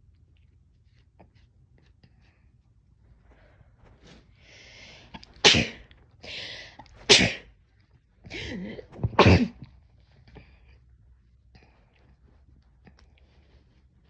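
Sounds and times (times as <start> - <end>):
person sneezing: 5.3 - 7.5, 8.3 - 9.6.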